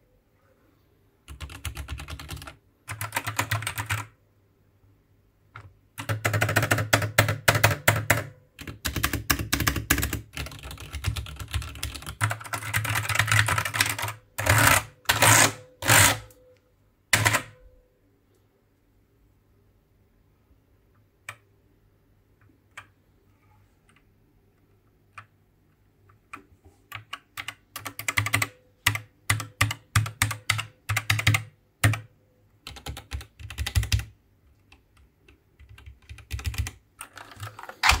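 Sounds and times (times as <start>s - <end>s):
mechanical keyboard typing: 1.3s - 4.2s, 5.6s - 16.3s, 17.1s - 17.6s, 26.3s - 38.0s.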